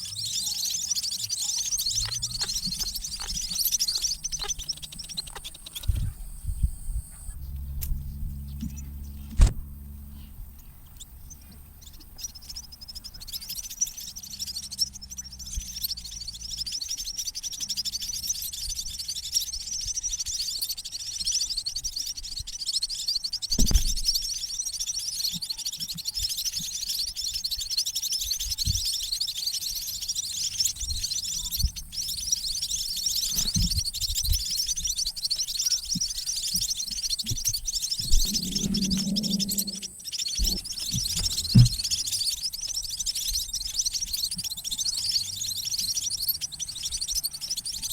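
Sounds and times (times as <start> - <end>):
nestlings high-pitched chirping: 0.0 - 47.9
low hum: 1.9 - 12.7, 37.4 - 42.3.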